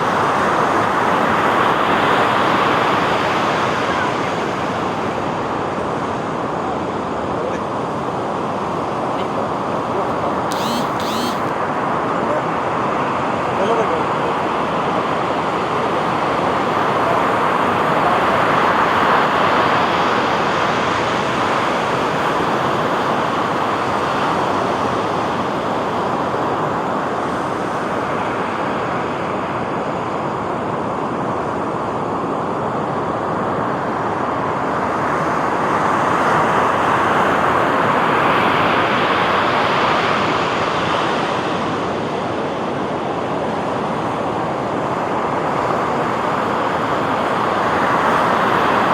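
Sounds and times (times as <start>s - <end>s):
ocean surf washing onto beach: 12.7s - 48.9s.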